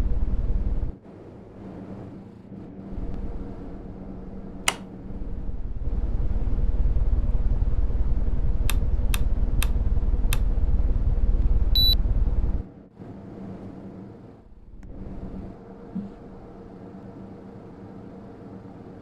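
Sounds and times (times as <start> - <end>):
air conditioner running: 0.0 - 19.0
sharp clicks: 4.7 - 4.9.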